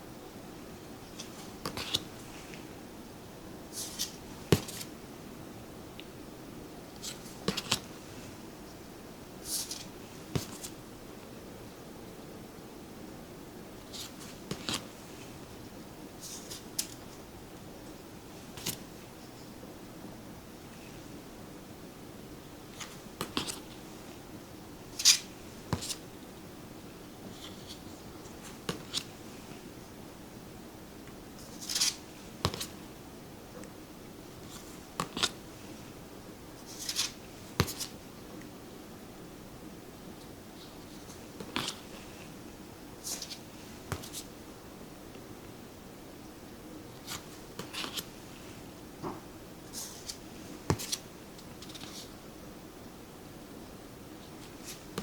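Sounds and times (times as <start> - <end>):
cards swishing: 3.8 - 4.9, 24.9 - 26.0, 31.4 - 32.8, 36.7 - 38.0, 43.0 - 44.3
cards clicking set down: 31.6 - 32.7.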